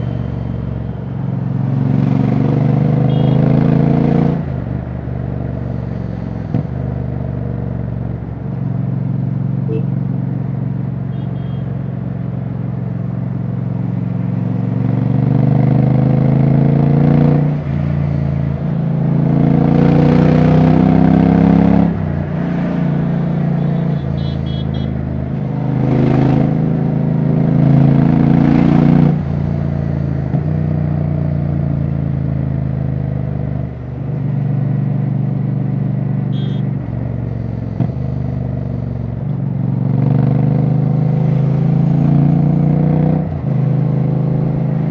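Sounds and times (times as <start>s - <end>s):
motorcycle engine with open exhaust: 0.0s - 3.8s, 23.4s - 28.3s, 28.9s - 44.9s.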